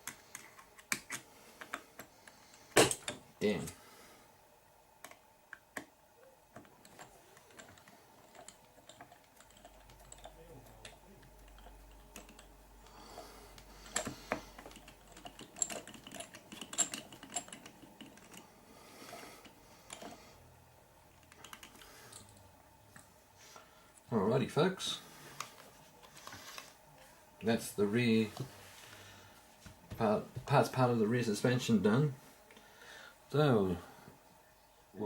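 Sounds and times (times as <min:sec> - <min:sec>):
plastic parts and tools clicking: 0:13.6 - 0:18.4.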